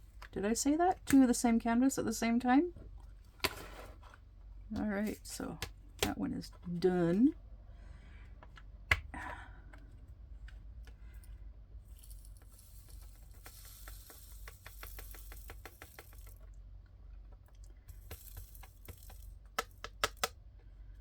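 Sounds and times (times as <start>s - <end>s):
tiny beads poured into container: 11.9s - 16.4s, 17.9s - 19.3s.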